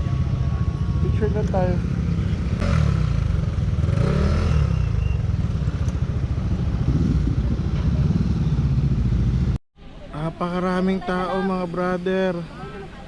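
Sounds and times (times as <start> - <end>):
motorcycle engine rumbling: 0.0 - 9.6.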